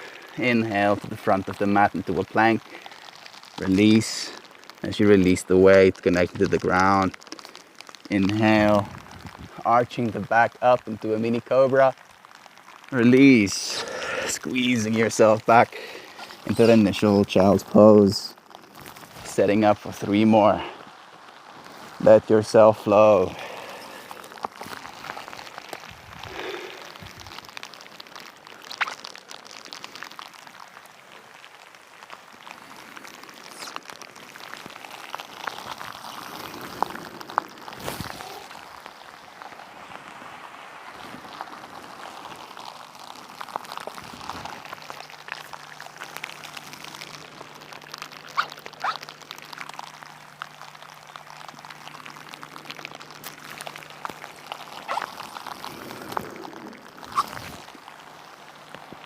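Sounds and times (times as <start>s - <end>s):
rain falling: 0.0s - 59.0s
raindrops clicking on microphone: 0.0s - 59.0s.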